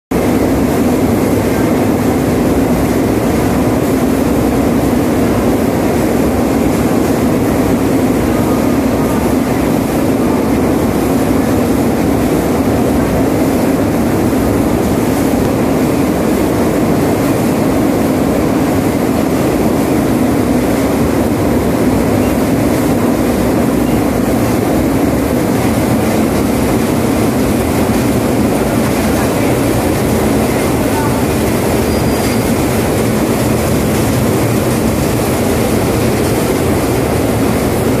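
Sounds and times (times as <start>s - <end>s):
loud rumbling noise: 0.1s - 38.0s.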